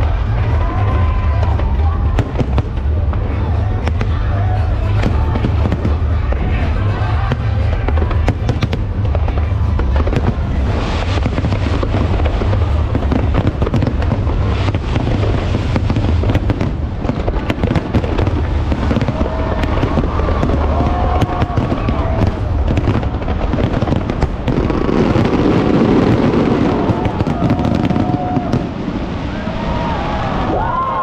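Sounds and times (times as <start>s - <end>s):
fireworks shell bursts rumbling: 0.0s - 28.7s
fireworks crackling and cracks: 0.0s - 29.7s.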